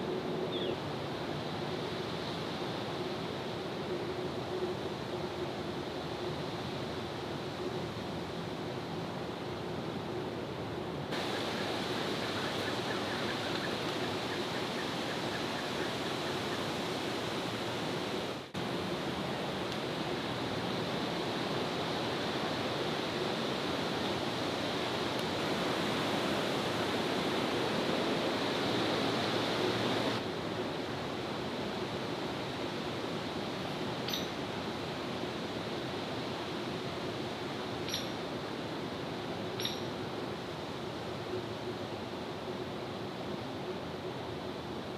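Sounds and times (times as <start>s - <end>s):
rushing outdoor background noise: 0.0s - 44.9s
faint high chirp: 34.1s - 34.4s, 37.9s - 38.2s, 39.6s - 39.9s.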